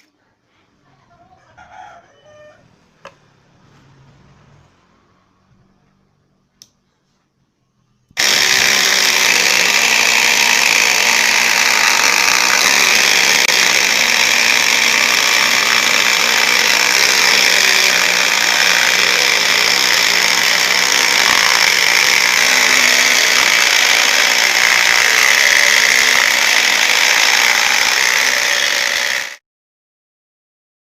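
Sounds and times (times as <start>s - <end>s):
power saw running: 8.2s - 29.4s.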